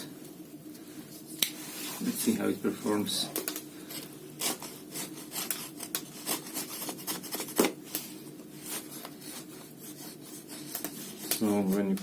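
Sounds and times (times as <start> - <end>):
knife blade carving wood: 3.9 - 7.8.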